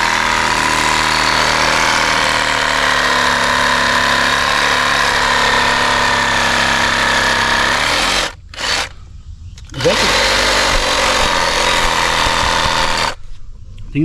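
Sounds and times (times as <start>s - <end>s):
power tool cutting tree root: 0.0s - 8.9s, 9.6s - 13.2s.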